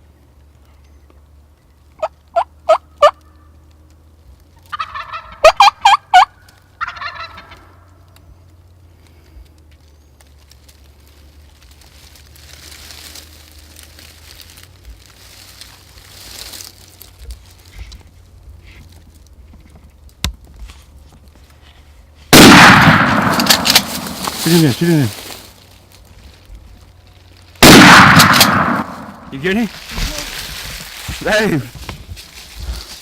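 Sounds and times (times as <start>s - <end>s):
turkey yelping and gobbling: 2.0s - 3.5s, 4.7s - 7.8s
soft rustling: 10.3s - 22.3s, 23.4s - 27.6s, 28.9s - 33.0s.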